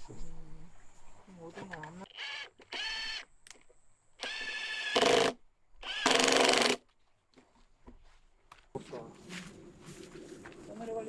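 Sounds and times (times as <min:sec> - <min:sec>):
power tool motor whine: 0:02.1 - 0:03.3, 0:04.2 - 0:06.8.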